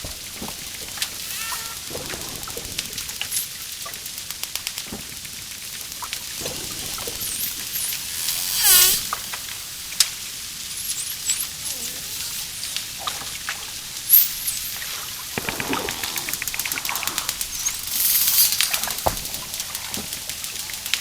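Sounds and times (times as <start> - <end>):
dolphin buzzing call: 1.2 - 1.9, 6.4 - 9.6, 10.7 - 13.0
dolphin whistles: 10.7 - 13.0.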